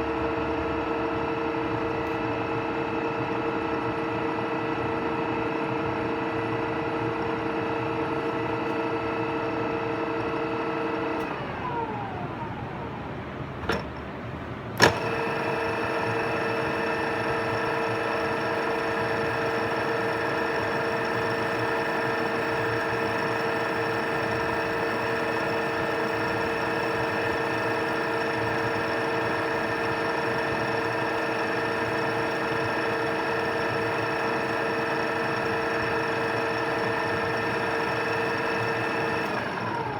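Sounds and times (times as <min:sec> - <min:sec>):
drill spindle drive whining: 0:00.0 - 0:13.9, 0:14.7 - 0:39.9.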